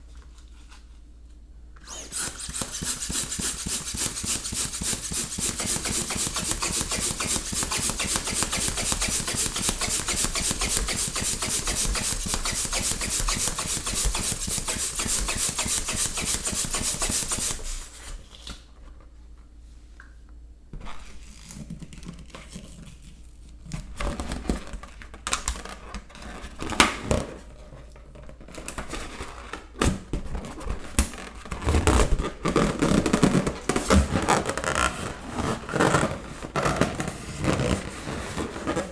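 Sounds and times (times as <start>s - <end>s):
pump inflating balloon: 1.8s - 18.3s
rubbing and clicking: 1.9s - 17.8s.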